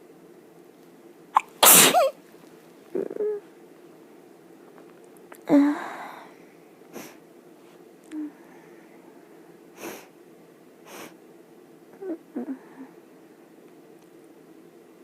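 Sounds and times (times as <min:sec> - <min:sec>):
person sniffing: 0:01.4 - 0:02.1
person sneezing: 0:01.4 - 0:02.2.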